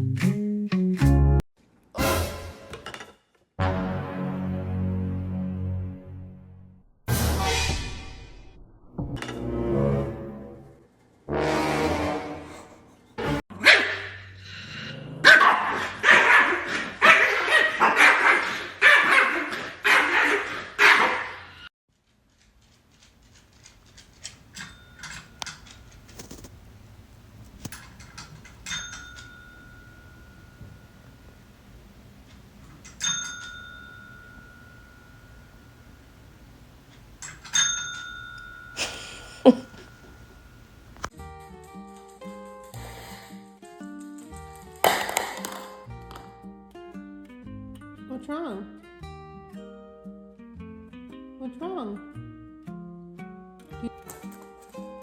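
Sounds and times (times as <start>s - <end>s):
dog barking: 13.6s - 14.2s, 15.2s - 21.4s
small bell ringing: 24.6s - 25.7s, 28.6s - 31.5s, 32.8s - 36.4s, 37.2s - 41.0s.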